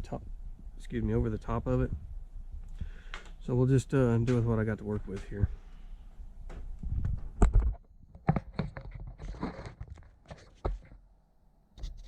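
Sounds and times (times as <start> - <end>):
rustling: 4.4 - 11.0
knocks of handling objects: 6.5 - 11.0.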